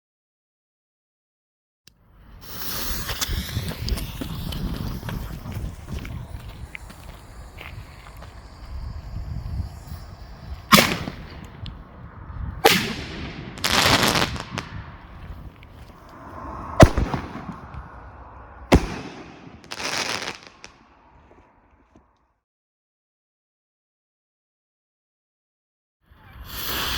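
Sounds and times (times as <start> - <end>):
airbomb bangs: 10.6 - 15.5, 16.8 - 20.7.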